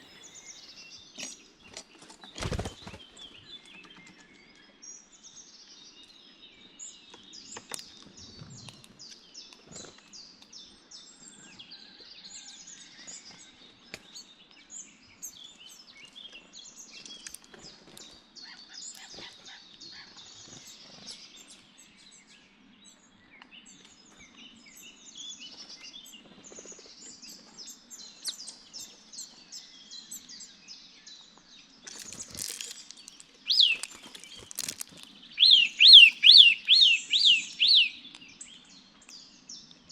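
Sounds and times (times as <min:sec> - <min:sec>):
songbirds chirping and trilling: 0:00.0 - 0:39.9
bird whistling high: 0:33.5 - 0:34.1, 0:35.3 - 0:38.1.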